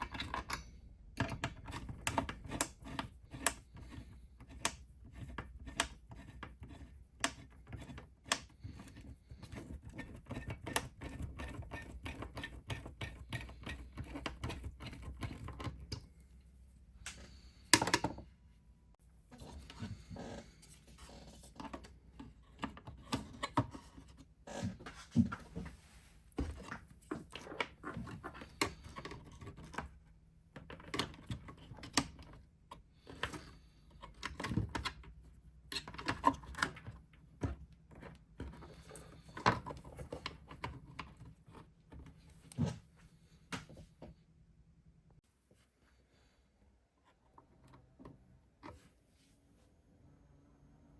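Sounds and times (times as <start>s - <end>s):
computer parts clicking and scraping: 0.0s - 16.1s.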